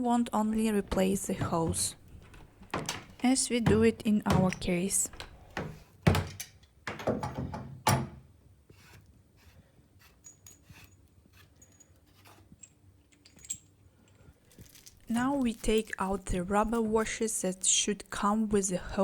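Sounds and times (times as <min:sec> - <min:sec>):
shower hose fittings handled: 0:00.6 - 0:07.5
knocks: 0:00.8 - 0:08.2.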